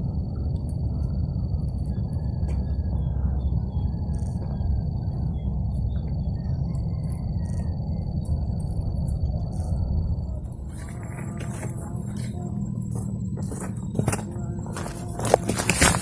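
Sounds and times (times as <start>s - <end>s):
faint chirps and clicks: 0.0s - 11.3s
cricket trilling: 0.0s - 16.0s
steady low rumble: 0.0s - 16.0s.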